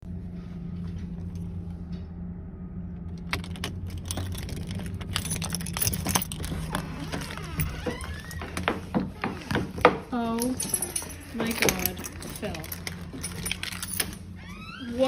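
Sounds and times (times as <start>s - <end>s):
steady low hum: 0.0s - 14.8s
metallic jingling and clicking: 3.2s - 8.4s, 9.4s - 14.5s.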